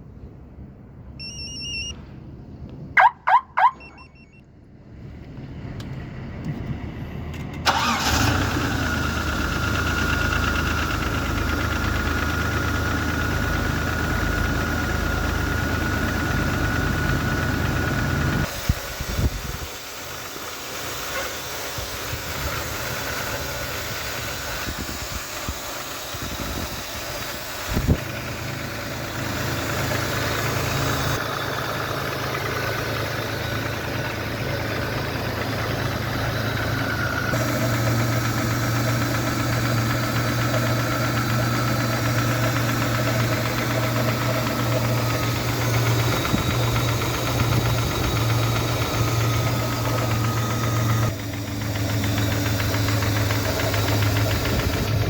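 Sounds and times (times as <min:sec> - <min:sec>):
car engine running with a knock: 0:37.3 - 0:55.0.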